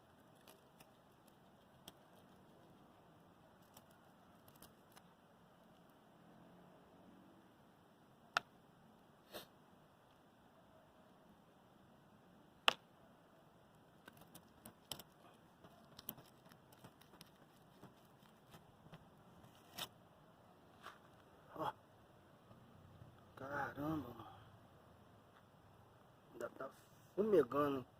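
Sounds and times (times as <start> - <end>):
light clicks and taps: 14.0 - 19.1.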